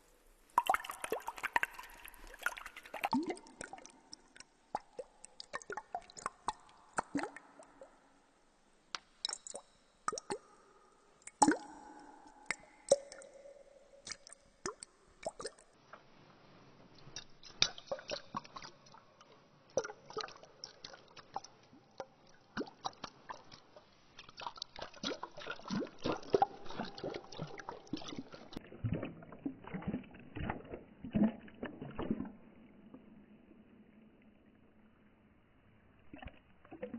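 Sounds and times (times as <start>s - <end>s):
water dripping and plopping: 0.0s - 8.2s, 8.9s - 15.8s, 17.0s - 33.0s, 36.1s - 36.9s
wet squishing: 0.6s - 8.0s, 22.5s - 30.7s.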